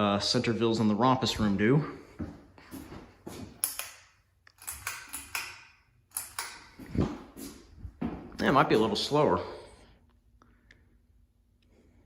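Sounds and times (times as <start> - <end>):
pull-chain switch clicking and rattling: 3.6 - 6.8.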